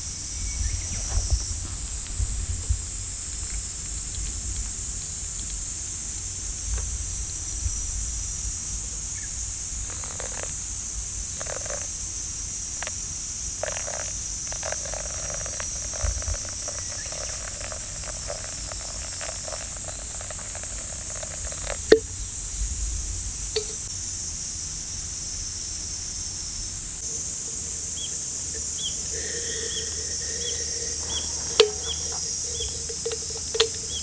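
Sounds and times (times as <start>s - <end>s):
cicadas droning: 0.0s - 34.0s
short clicks and crackles: 28.6s - 34.0s.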